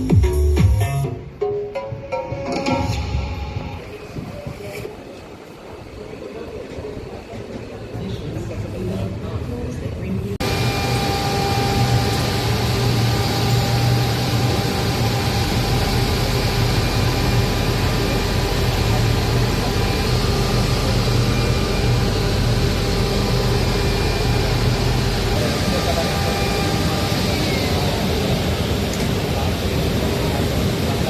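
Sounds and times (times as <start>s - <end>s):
faint high whining tones: 10.4s - 31.0s
machine hum: 10.4s - 31.0s.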